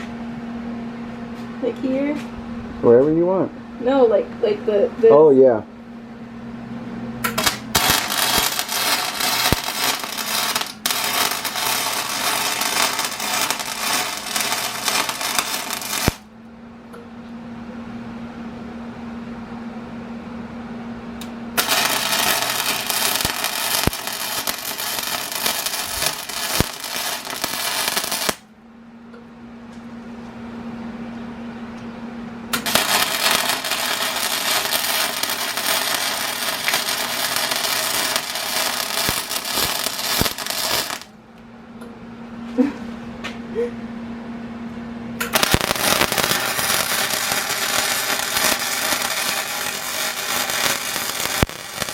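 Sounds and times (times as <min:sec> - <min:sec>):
steady low hum: 0:00.0 - 0:51.9
welding arc crackling: 0:07.2 - 0:16.3, 0:21.6 - 0:28.4, 0:32.5 - 0:41.1, 0:45.2 - 0:51.9.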